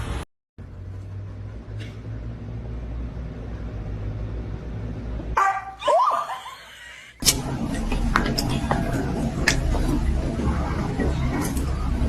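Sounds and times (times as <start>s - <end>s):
dog barking: 5.4s - 6.4s
dog yipping: 5.4s - 6.5s.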